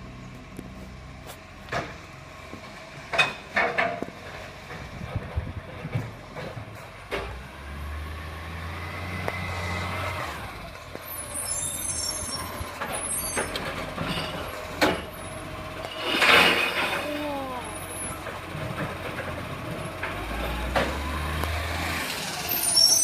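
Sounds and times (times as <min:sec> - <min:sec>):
truck engine droning: 0:00.0 - 0:23.0
brake squeal: 0:09.2 - 0:18.3, 0:20.2 - 0:23.0.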